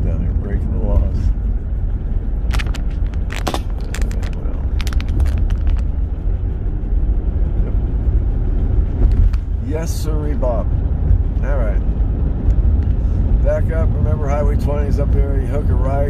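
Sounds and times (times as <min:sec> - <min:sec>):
sharp clicks and rattles: 0:00.0 - 0:08.0, 0:08.6 - 0:09.6
road rumble inside car: 0:00.0 - 0:16.0.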